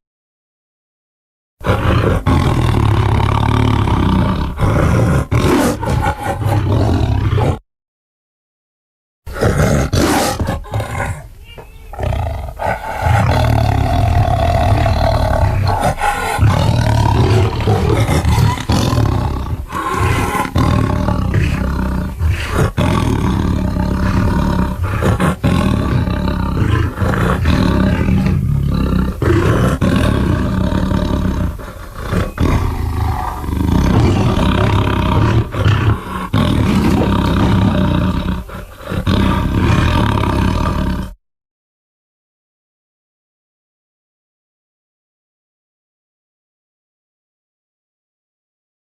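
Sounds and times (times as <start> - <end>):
deep dinosaur roars: 1.6 - 7.6, 11.9 - 41.2.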